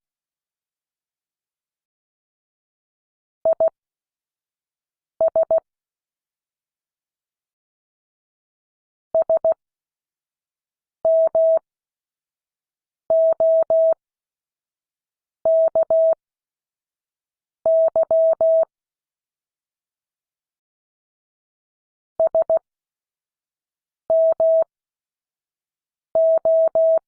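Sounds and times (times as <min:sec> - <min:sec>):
morse code beeps: 0:13.2 - 0:14.0, 0:26.2 - 0:27.0.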